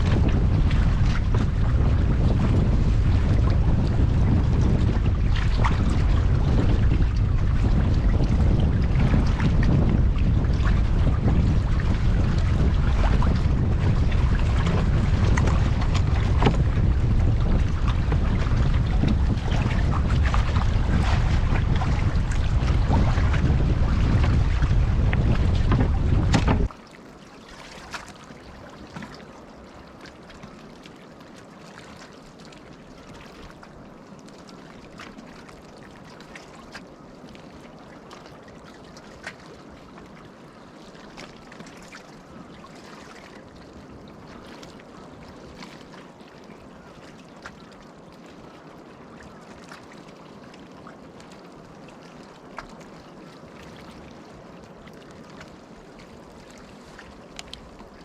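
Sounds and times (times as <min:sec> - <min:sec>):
water lapping and trickling: 0:00.0 - 0:58.0
small ticks and clicks: 0:57.4 - 0:57.6.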